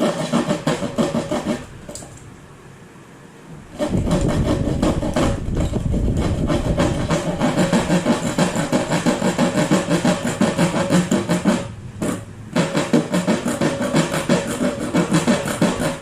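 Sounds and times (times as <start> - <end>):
music with steady beat: 6.2 - 16.0.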